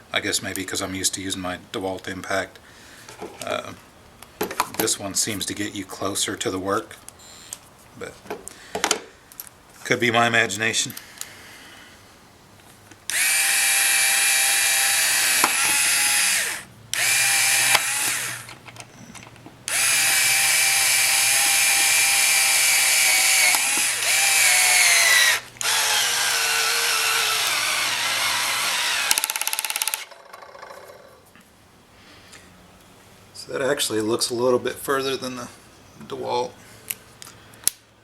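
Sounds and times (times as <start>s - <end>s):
cordless screwdriver motor whining: 13.1s - 18.6s, 19.7s - 30.1s.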